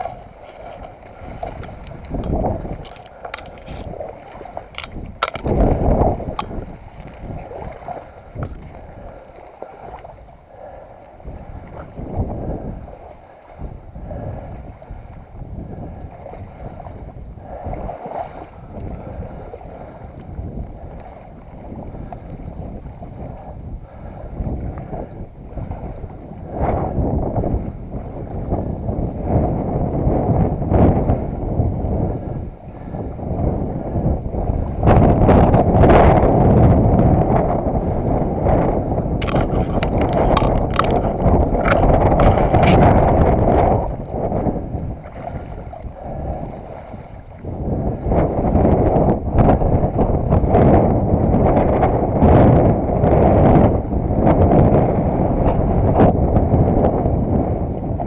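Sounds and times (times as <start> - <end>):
water sloshing: 0.0 - 9.0, 39.1 - 44.2
wading through marsh water and grass: 0.0 - 28.4, 32.7 - 53.3
stems snapping: 1.6 - 3.9, 4.8 - 5.8, 39.2 - 42.9
grass rustling: 39.2 - 43.4.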